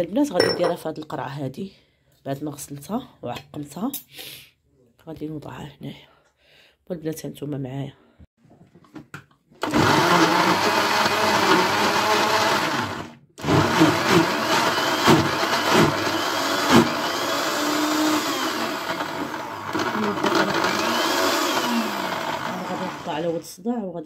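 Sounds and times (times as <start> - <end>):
food processor grinding: 9.6 - 23.4.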